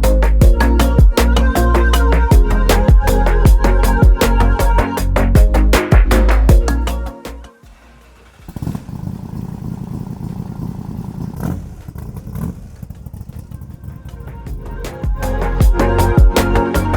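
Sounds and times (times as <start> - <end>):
car engine starting and idling: 7.6 - 16.2.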